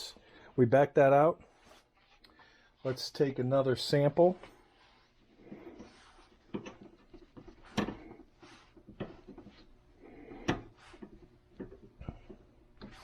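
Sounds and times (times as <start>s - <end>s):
small knocks and rustles: 4.2s - 13.0s.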